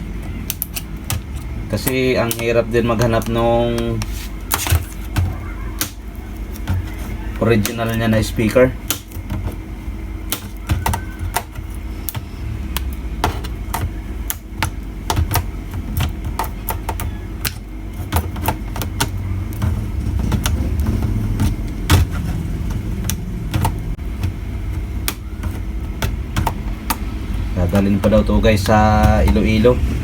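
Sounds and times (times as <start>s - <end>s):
steady low hum: 0.0s - 30.0s
parts and tools clicking: 10.3s - 29.7s.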